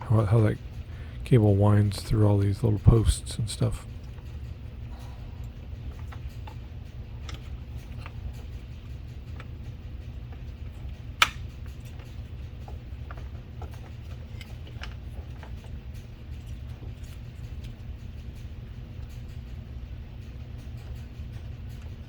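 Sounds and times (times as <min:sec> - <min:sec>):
steady low hum: 0:00.0 - 0:22.0
plastic parts clicking and tapping: 0:10.3 - 0:15.7.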